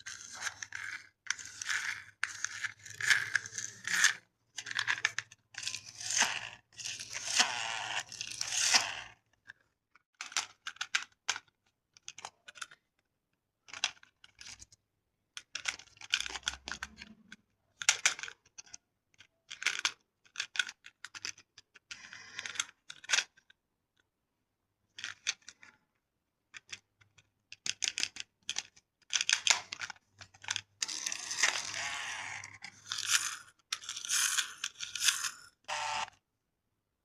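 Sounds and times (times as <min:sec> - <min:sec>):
toy cars skidding and scraping: 0:00.0 - 0:09.4, 0:15.4 - 0:18.5, 0:19.5 - 0:23.4, 0:27.6 - 0:36.2
toy cars clicking and clacking: 0:00.0 - 0:24.1, 0:24.9 - 0:25.8, 0:26.5 - 0:36.2.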